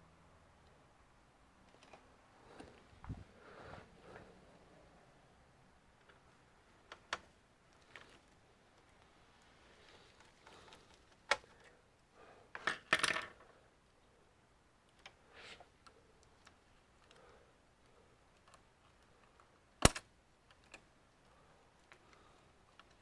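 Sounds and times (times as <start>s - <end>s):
faint handling rustle: 7.7s - 11.9s.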